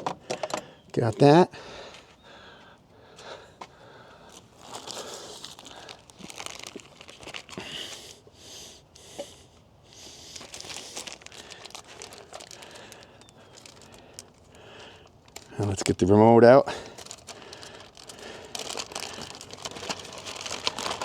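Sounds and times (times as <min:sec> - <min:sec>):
packaging crinkling: 0:04.2 - 0:08.2, 0:10.2 - 0:21.0.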